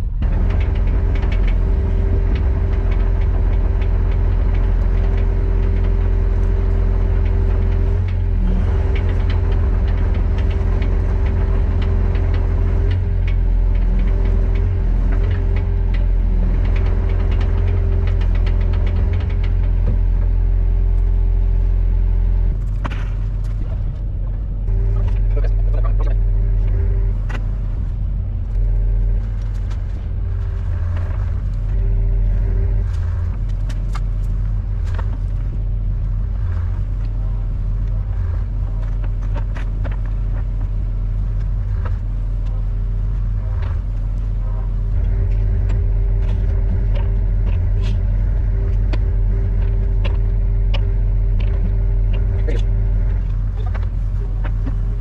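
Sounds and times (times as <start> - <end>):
knocks and clicks: 0.0 - 21.2, 44.8 - 55.0
excavator diesel engine running: 0.0 - 55.0
hydraulic whine: 0.0 - 55.0.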